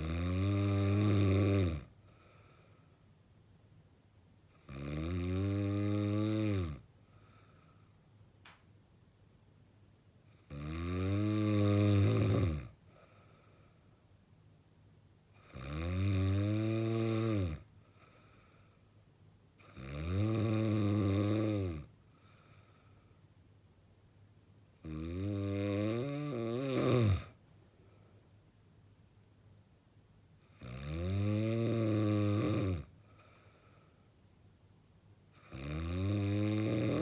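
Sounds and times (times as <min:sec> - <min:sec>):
person snoring heavily: 0:00.0 - 0:02.6, 0:04.6 - 0:06.8, 0:10.4 - 0:13.2, 0:15.4 - 0:18.6, 0:19.6 - 0:22.6, 0:24.8 - 0:27.4, 0:30.5 - 0:33.5, 0:35.4 - 0:37.0
faint breaths: 0:01.9 - 0:03.3, 0:06.9 - 0:08.2, 0:12.7 - 0:14.3, 0:17.7 - 0:19.2, 0:21.9 - 0:23.5, 0:27.2 - 0:28.6, 0:32.9 - 0:34.4.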